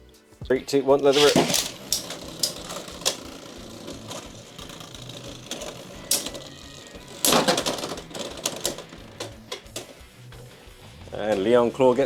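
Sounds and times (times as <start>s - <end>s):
spinning tops clacking together: 1.0s - 10.0s.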